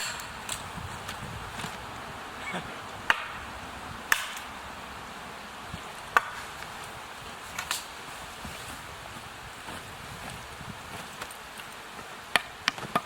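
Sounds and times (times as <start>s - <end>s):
axe chopping wood: 3.1s - 3.4s, 4.1s - 4.5s, 6.1s - 6.5s, 12.3s - 13.0s.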